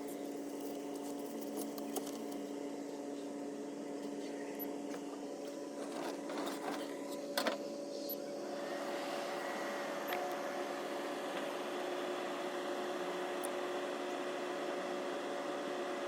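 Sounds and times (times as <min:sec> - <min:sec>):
cooler fan rushing and whirring: 0:00.0 - 0:16.0.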